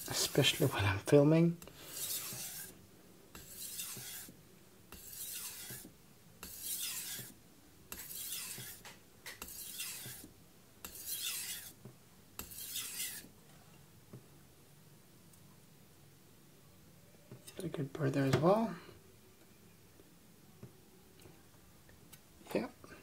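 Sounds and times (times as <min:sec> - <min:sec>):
knife rasping on whetstone: 0:01.7 - 0:02.8, 0:03.4 - 0:11.8, 0:12.4 - 0:13.3.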